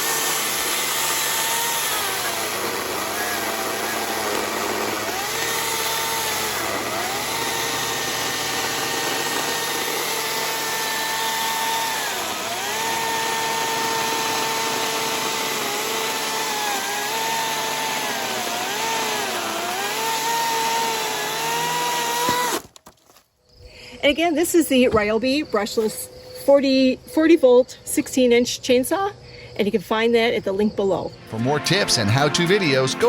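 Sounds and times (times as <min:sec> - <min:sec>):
chainsaw cutting wood: 0:00.0 - 0:22.9.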